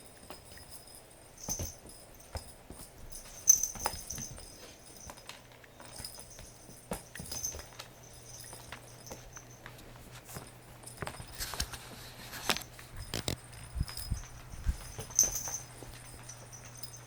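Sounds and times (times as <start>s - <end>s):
high jingles: 0.0s - 17.0s.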